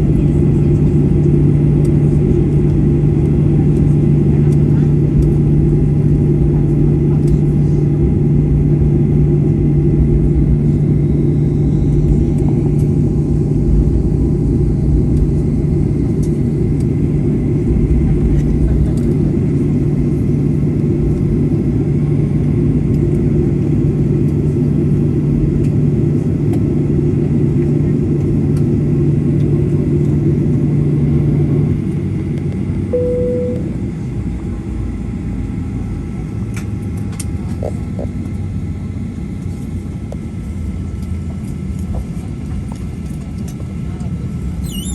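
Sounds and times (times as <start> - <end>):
aircraft cabin rumble: 0.0 - 44.9
steady hum: 32.9 - 34.1
short chime: 33.0 - 33.7.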